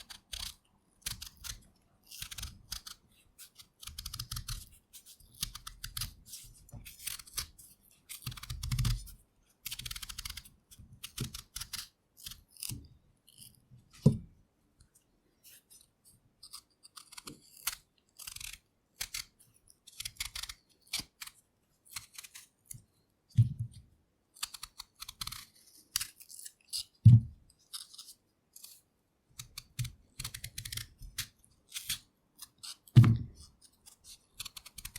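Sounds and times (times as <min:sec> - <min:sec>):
knife peeling potatoes: 0:00.0 - 0:13.6, 0:15.5 - 0:22.8, 0:24.4 - 0:28.8, 0:29.4 - 0:34.9.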